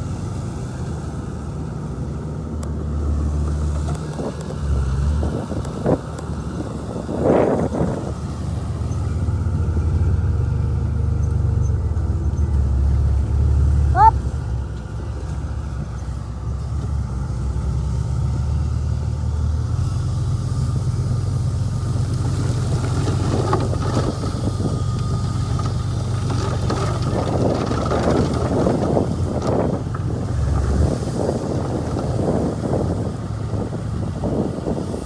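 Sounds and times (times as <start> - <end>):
bulldozer diesel engine running: 0.0 - 35.0
metal clanks and rattles: 22.1 - 31.0.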